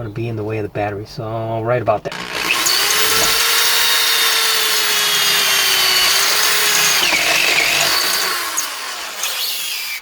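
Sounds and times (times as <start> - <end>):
electric drill whining: 2.1 - 10.0.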